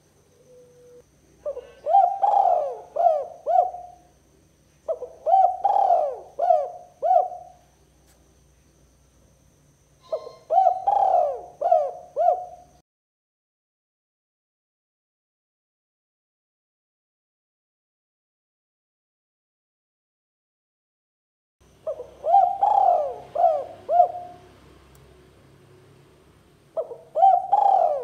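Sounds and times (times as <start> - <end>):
dove cooing: 0.4 - 4.1, 4.9 - 7.7, 10.0 - 12.8, 21.8 - 24.6, 26.8 - 28.0.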